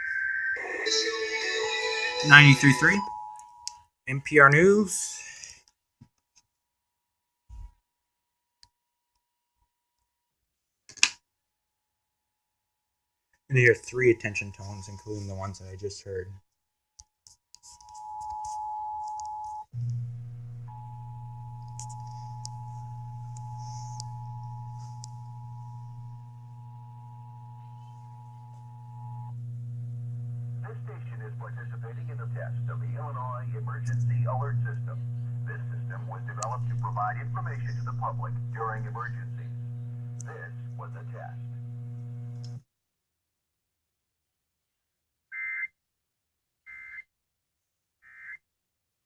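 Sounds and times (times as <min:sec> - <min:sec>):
steady low hum: 0:19.8 - 0:42.6.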